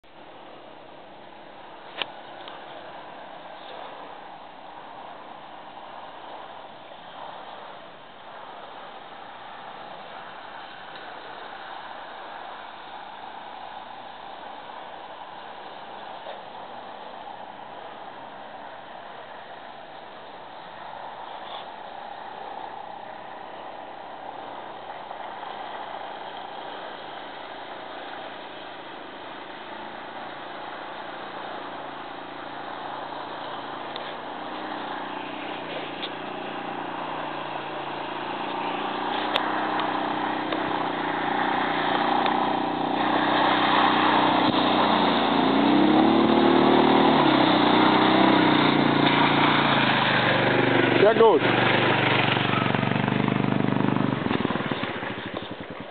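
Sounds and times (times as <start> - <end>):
quad bike engine revving: 28.0 - 55.9.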